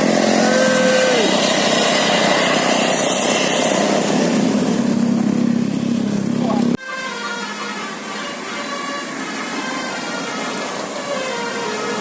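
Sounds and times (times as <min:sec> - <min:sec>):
bus engine running: 0:00.0 - 0:12.0
musical horn note: 0:06.8 - 0:12.0.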